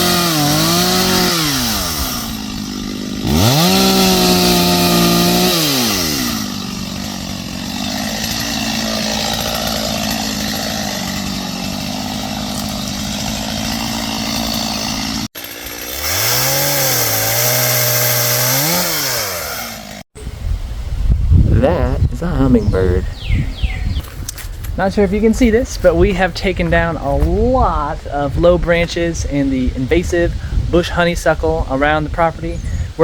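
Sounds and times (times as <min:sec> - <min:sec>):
chainsaw revving and idling: 0:00.0 - 0:20.1.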